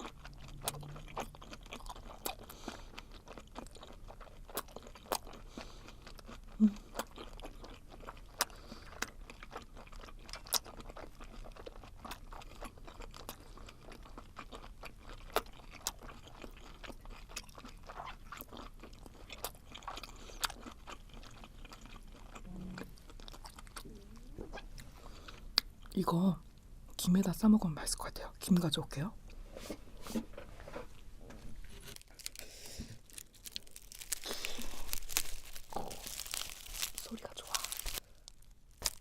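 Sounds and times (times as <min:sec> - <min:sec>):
person chewing crunchy food: 0:00.0 - 0:23.9, 0:31.7 - 0:39.0.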